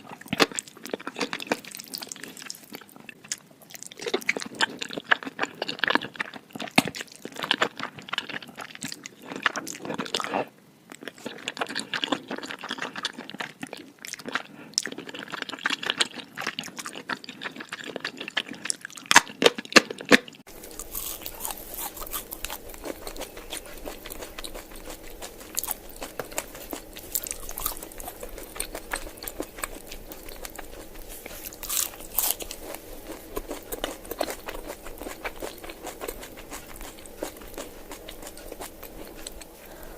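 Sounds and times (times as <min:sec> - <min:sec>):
chewing and crunching food: 0:00.0 - 0:39.9
steady low hum: 0:20.5 - 0:39.9.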